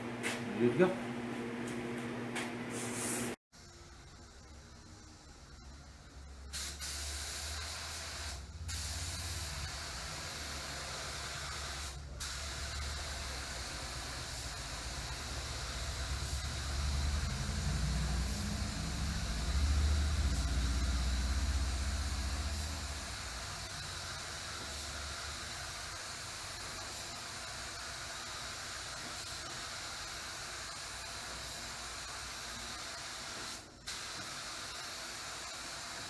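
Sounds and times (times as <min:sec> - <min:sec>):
paint spray gun hissing: 0:06.6 - 0:36.0.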